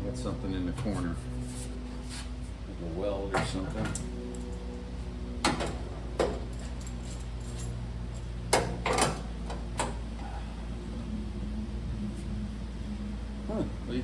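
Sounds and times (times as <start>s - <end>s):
steady low hum: 0.0s - 14.0s
metallic clanks and knocks: 5.4s - 7.0s, 8.5s - 10.0s.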